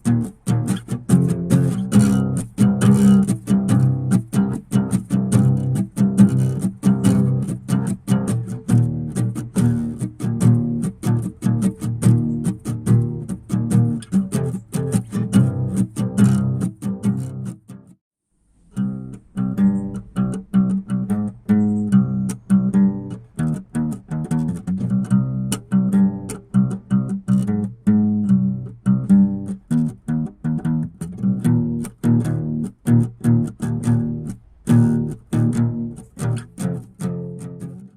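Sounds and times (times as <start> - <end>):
plucked string instrumental music: 0.0 - 18.0, 18.6 - 37.9.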